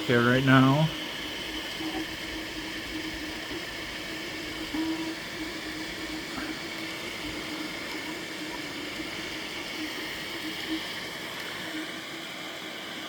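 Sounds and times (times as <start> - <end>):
fan whir: 0.0 - 13.0
humming motor: 0.0 - 13.0.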